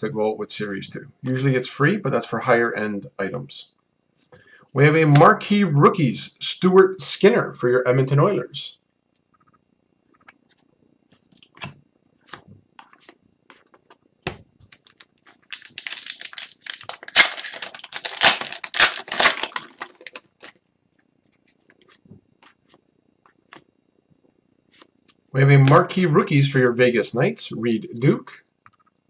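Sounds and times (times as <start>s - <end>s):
foil wrapper tearing and crinkling: 14.7s - 20.6s.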